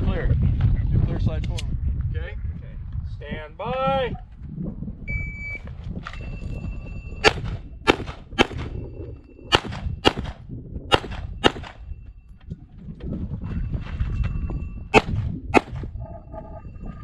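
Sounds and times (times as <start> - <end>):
pistol shots: 7.2 - 8.8, 9.5 - 11.8, 15.0 - 15.8.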